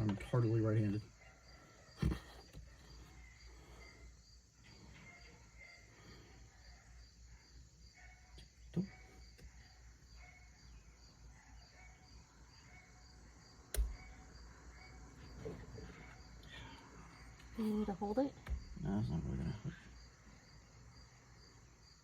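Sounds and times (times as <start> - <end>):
crickets chirping: 0.0 - 22.0.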